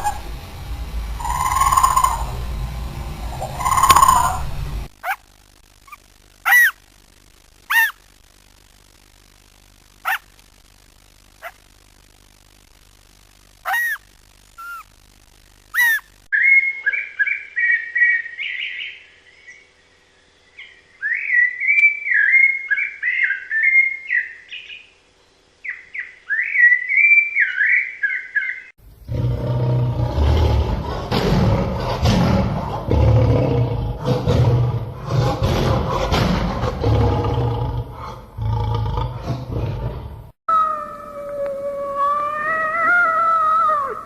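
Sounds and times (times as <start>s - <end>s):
high whining calls: 0.0s - 5.2s, 5.9s - 6.8s, 13.6s - 14.9s, 15.7s - 18.8s
songbird warbling: 1.2s - 2.4s, 3.3s - 5.2s, 5.9s - 6.8s, 7.7s - 8.0s, 13.6s - 14.0s, 14.6s - 14.8s, 15.8s - 19.7s, 20.5s - 24.9s, 25.6s - 28.7s
loud deep roar: 29.0s - 40.3s.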